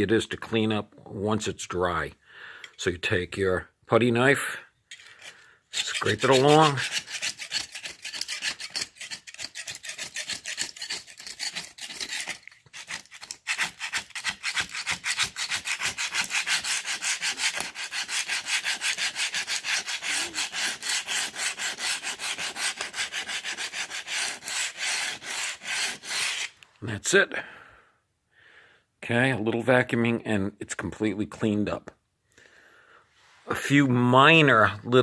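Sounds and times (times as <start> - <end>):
putty knife scraping concrete: 4.9 - 26.6.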